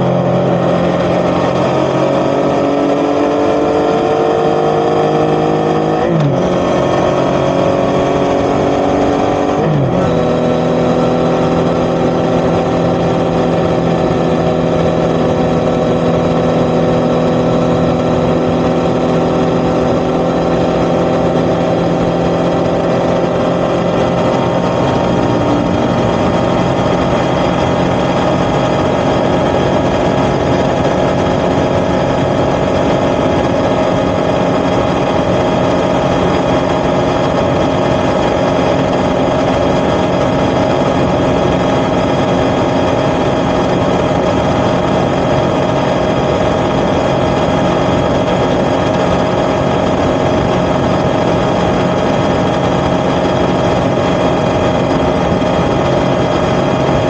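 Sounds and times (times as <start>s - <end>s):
motorcycle engine accelerating: 0.0s - 57.0s.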